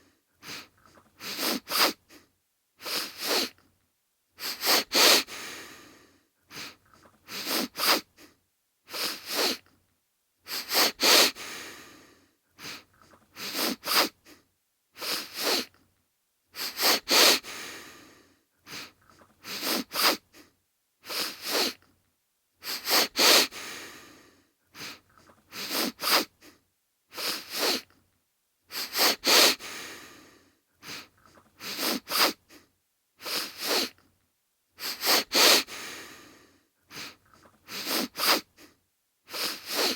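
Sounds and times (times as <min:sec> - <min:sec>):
man sniffling: 0:00.0 - 0:03.6, 0:04.4 - 0:09.6, 0:10.5 - 0:14.4, 0:15.0 - 0:15.7, 0:16.6 - 0:21.8, 0:22.6 - 0:27.9, 0:28.7 - 0:34.0, 0:34.8 - 0:39.9.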